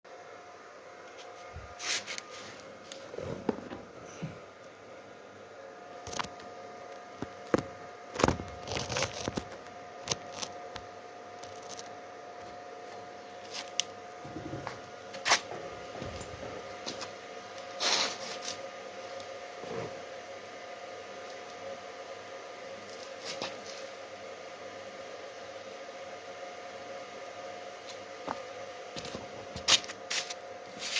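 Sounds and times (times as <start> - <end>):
electrical hum: 0.1 - 30.9
arc welding crackling: 6.0 - 12.6.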